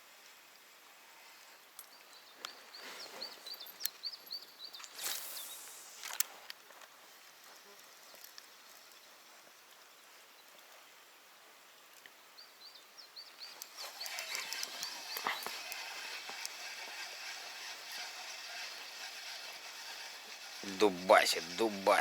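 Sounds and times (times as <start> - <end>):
fishing reel clicks: 13.6 - 22.0
rod swishes: 13.6 - 22.0.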